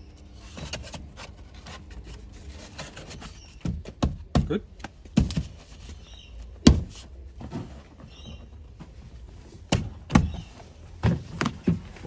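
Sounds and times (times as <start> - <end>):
car door parts knocking and clicking: 9.7 - 12.0.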